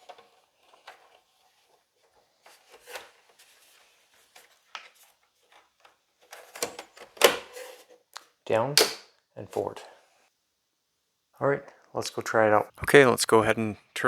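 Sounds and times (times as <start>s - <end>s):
plastic panel clicks and snaps: 8.8s - 9.1s.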